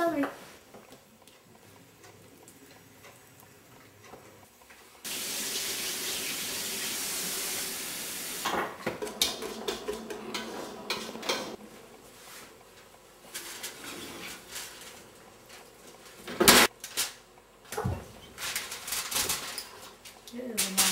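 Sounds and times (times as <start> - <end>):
tap water running into sink: 5.1 - 11.6
dishes and pans clattering: 8.4 - 11.6.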